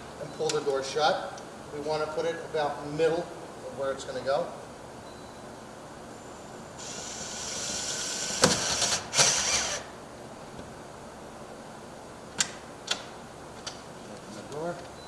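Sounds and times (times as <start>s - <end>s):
cordless drill driving screws: 6.8s - 9.9s
knocks as drill stops: 8.4s - 9.5s.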